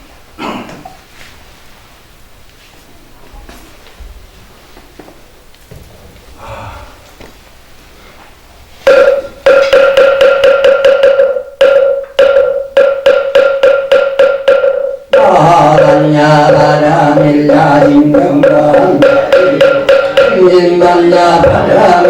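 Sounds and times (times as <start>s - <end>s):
chanting voices: 15.1s - 22.0s.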